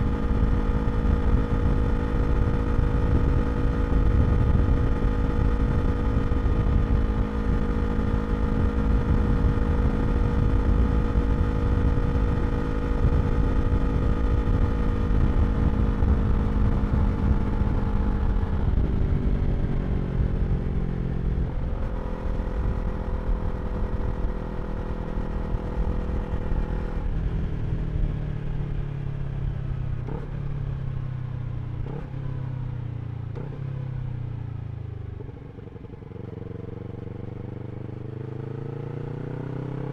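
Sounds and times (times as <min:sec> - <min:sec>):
motorcycle engine running: 0:00.0 - 0:39.9
wind rush on helmet: 0:00.3 - 0:28.2.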